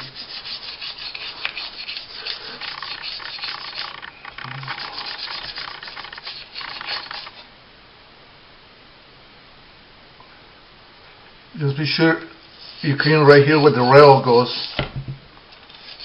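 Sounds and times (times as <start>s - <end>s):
brush scrubbing metal part: 0.0s - 7.4s, 12.5s - 14.8s, 15.7s - 16.0s.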